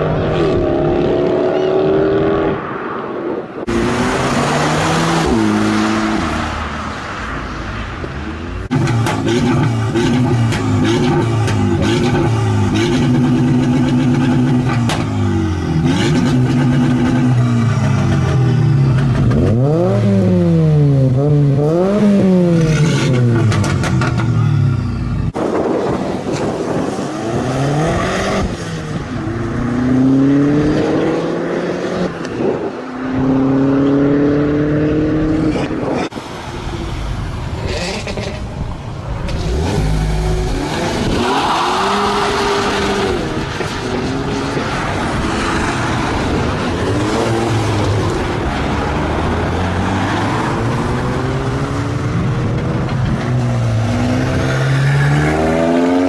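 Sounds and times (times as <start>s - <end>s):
car engines revving: 0.0s - 56.0s.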